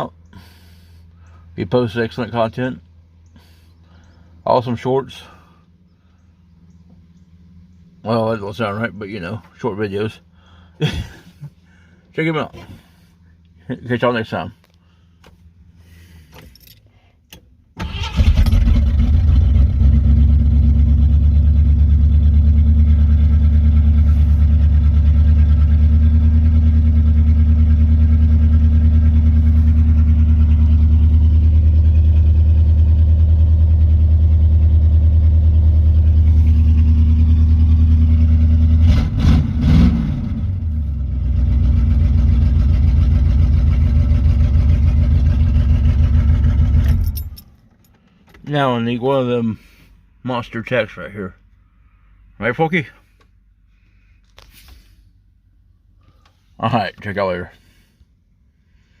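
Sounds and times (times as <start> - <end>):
car engine starting and idling: 0.0 - 59.0
engine revving: 17.8 - 47.2.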